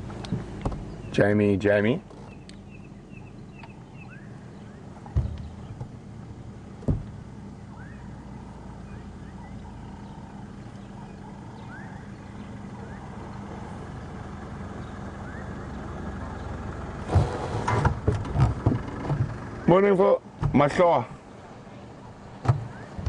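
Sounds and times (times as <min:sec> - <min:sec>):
vehicle engine humming: 0:00.0 - 0:23.0
rising bird chirps: 0:02.1 - 0:05.8, 0:07.6 - 0:16.9, 0:21.2 - 0:23.0.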